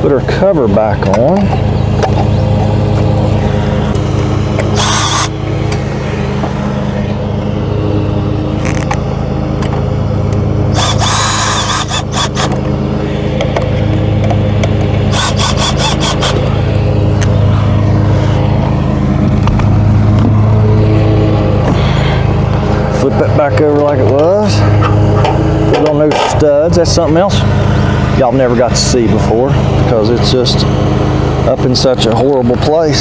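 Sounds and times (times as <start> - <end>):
lawn mower engine running: 0.0 - 33.0
cordless drill driving screws: 4.8 - 5.3, 10.7 - 12.6, 15.1 - 16.4.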